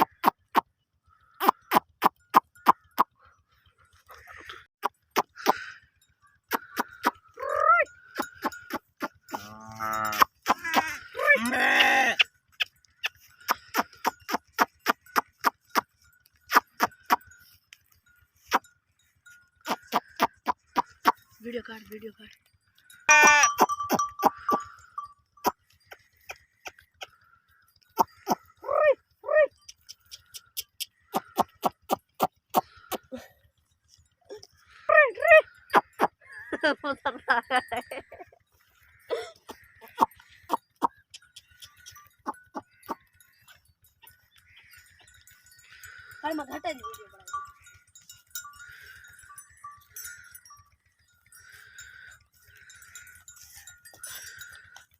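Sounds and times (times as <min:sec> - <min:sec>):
high animal bleats: 0:04.0 - 0:17.5, 0:19.6 - 0:21.4, 0:22.9 - 0:27.2, 0:27.9 - 0:33.3, 0:38.5 - 0:50.6, 0:51.3 - 0:54.9
sheep bleating: 0:06.5 - 0:12.3, 0:23.1 - 0:24.8.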